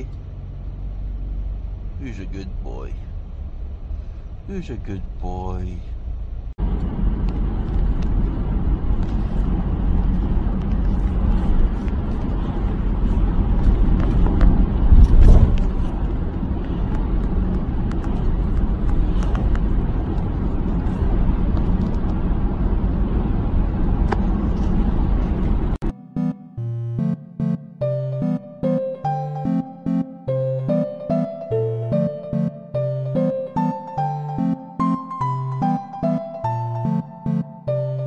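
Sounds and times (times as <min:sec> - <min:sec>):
car road noise rumble: 0:00.0 - 0:25.9.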